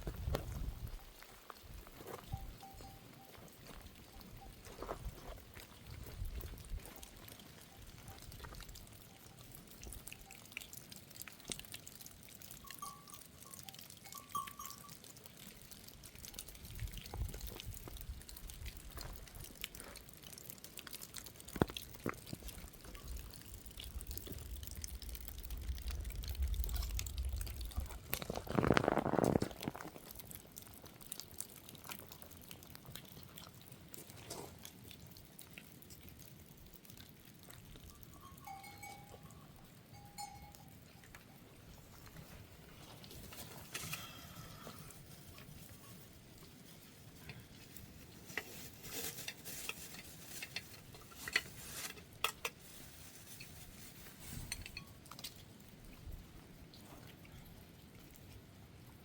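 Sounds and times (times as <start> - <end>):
water dripping and trickling: 0.1 - 59.0
low rumble: 24.0 - 29.5.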